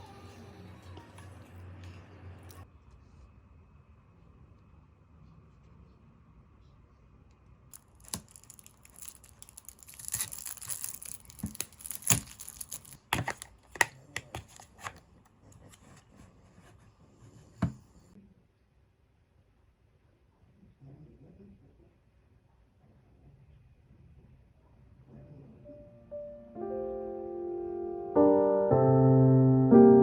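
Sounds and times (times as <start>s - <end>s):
packaging torn and crinkled: 7.7s - 14.9s.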